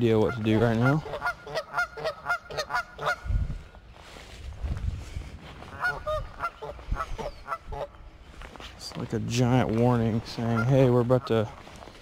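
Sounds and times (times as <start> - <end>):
geese honking: 0.0 - 3.3, 5.7 - 8.0, 10.1 - 11.6.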